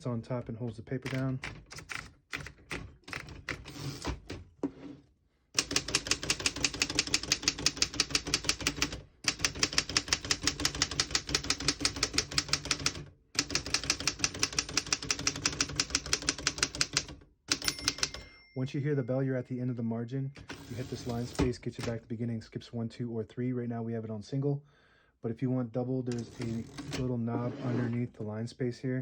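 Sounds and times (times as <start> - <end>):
typewriter keystrokes: 1.0 - 4.4, 5.6 - 18.3
typewriter margin bell ding: 17.5 - 18.7.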